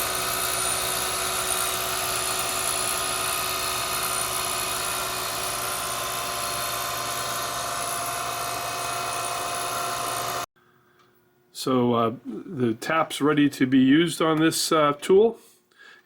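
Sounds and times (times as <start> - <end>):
grinder whining: 0.0 - 10.5.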